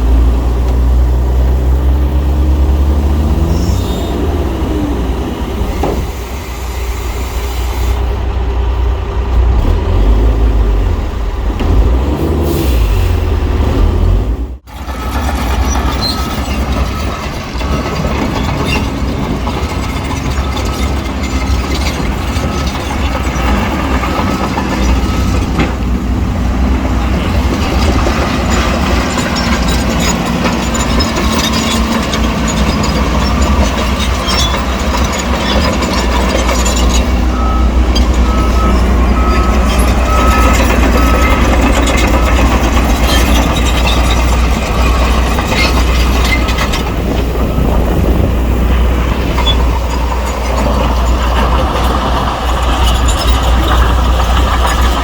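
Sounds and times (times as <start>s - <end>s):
bulldozer diesel engine: 0.0s - 55.0s
steel tracks clanking: 0.0s - 55.0s
reversing alarm beeping: 20.2s - 25.6s, 30.9s - 48.4s.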